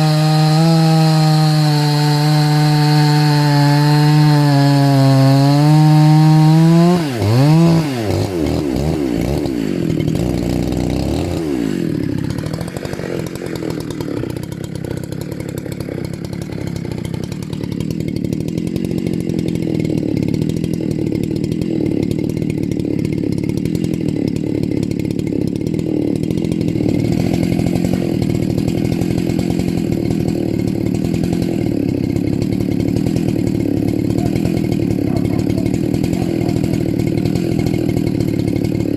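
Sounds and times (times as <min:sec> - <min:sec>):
chainsaw engine revving and idling: 0:00.0 - 0:38.9.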